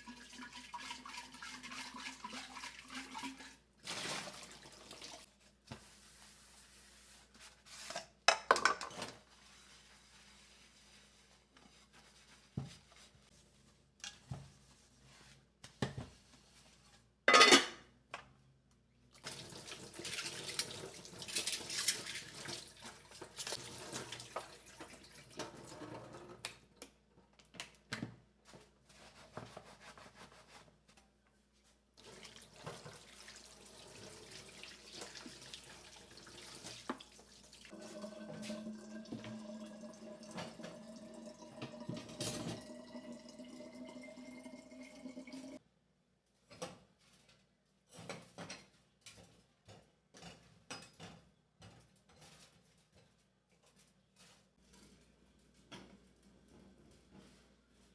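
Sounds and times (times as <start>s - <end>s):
tap water running into sink: 0.0s - 5.3s, 19.2s - 26.2s, 32.0s - 45.6s.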